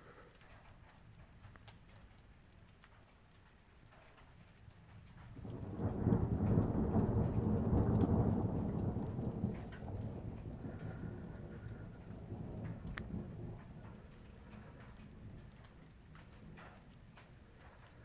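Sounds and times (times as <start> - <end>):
light rain: 0.0 - 18.0
thunder rumbling: 5.3 - 18.0.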